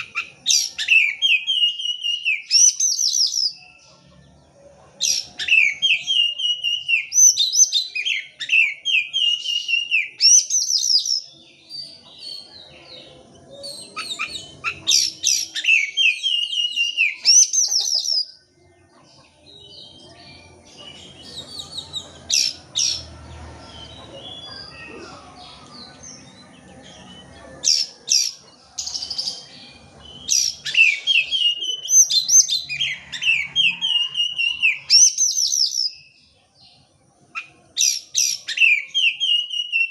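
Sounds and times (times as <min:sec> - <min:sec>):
bird singing whistled phrases: 0:00.0 - 0:03.7, 0:05.1 - 0:11.3, 0:13.6 - 0:18.3, 0:30.1 - 0:36.1, 0:37.4 - 0:39.9.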